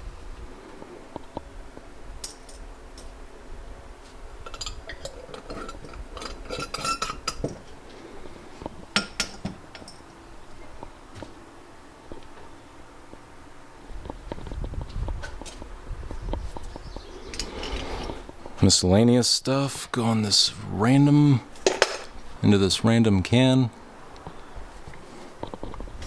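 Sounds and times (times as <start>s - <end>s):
scrap metal clinking and rattling: 4.5s - 7.6s, 21.6s - 22.2s.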